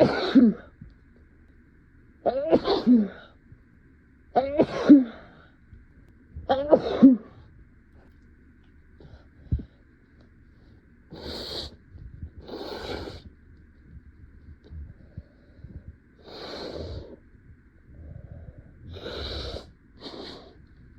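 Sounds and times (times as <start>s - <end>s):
person sneezing: 0.0s - 0.7s, 2.3s - 3.3s, 4.4s - 5.4s, 6.5s - 7.4s
noisy breaths: 4.9s - 5.8s, 8.9s - 20.9s.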